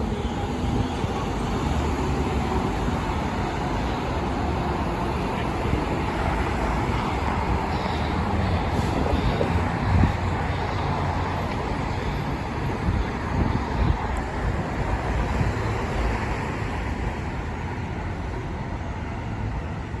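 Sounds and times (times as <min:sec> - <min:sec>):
diesel engines rumbling: 0:00.0 - 0:20.0
street traffic: 0:00.0 - 0:20.0.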